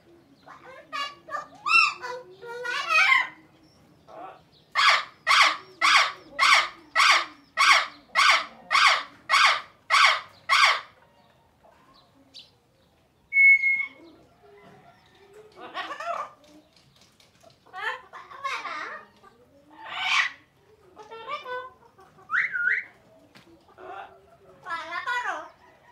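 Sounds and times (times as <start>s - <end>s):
parrot squawking: 0.5s - 3.4s, 4.2s - 10.9s, 19.8s - 20.4s
parrot whistle: 13.3s - 13.9s.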